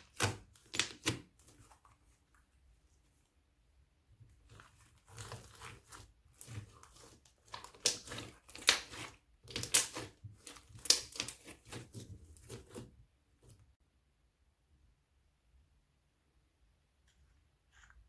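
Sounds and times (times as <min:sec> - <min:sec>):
crunchy slime crackling and popping: 0:05.1 - 0:12.8.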